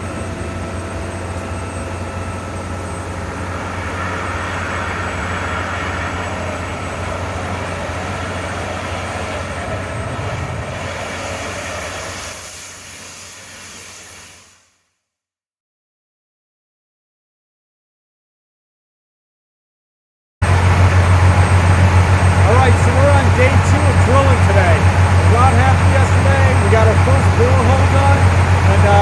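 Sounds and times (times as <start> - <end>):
drilling rig engine drone: 0.0 - 14.5, 20.4 - 29.0.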